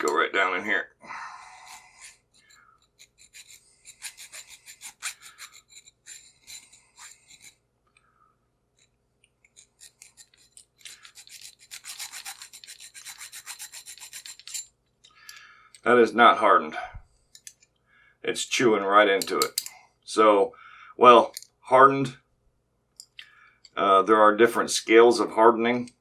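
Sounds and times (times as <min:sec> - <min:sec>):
metal file rasping on padlock: 0:01.6 - 0:07.6, 0:08.8 - 0:15.4, 0:19.2 - 0:19.7.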